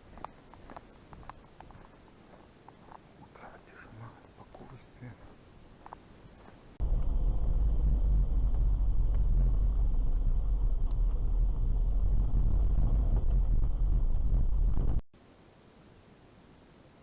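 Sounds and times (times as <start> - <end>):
faint hiss: 0.0 - 6.8, 15.2 - 17.0.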